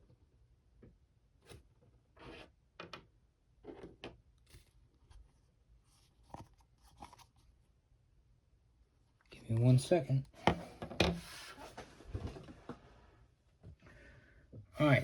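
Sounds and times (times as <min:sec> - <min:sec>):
plastic toy handling noises: 0:05.9 - 0:07.5.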